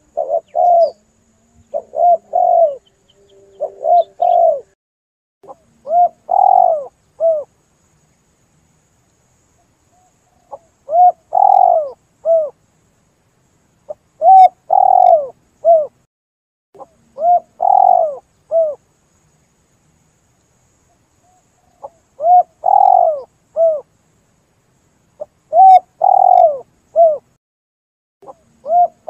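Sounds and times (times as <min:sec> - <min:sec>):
dove cooing: 0:00.0 - 0:04.8, 0:05.5 - 0:07.5, 0:10.4 - 0:12.6, 0:13.9 - 0:16.0, 0:16.8 - 0:18.8, 0:21.8 - 0:23.9, 0:25.2 - 0:27.3, 0:28.2 - 0:29.0.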